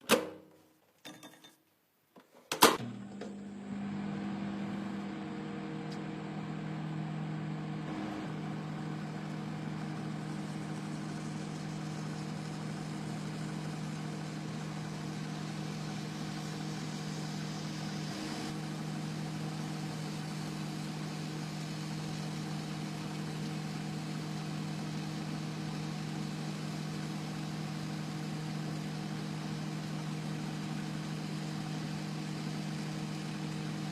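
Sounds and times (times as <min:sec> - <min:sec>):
microwave oven click: 0:02.5 - 0:06.4
microwave oven humming: 0:02.7 - 0:33.9.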